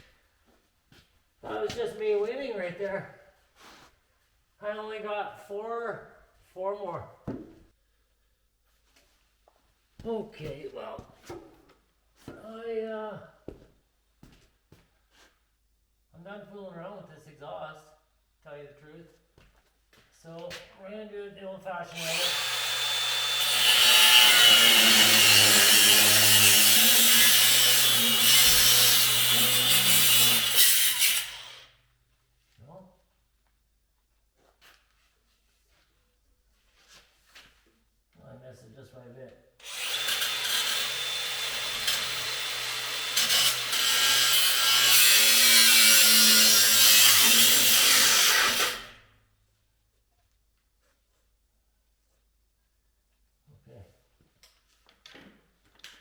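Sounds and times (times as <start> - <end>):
power cutting tool whining: 21.9 - 31.5, 39.6 - 48.8.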